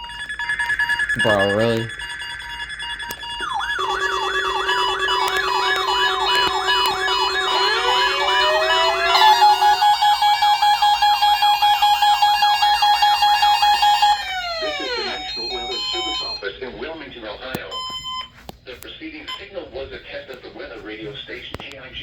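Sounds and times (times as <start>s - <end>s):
warbling siren tones: 0.0s - 16.5s
steady beeping tones: 0.0s - 18.3s
rising wail: 3.4s - 12.0s.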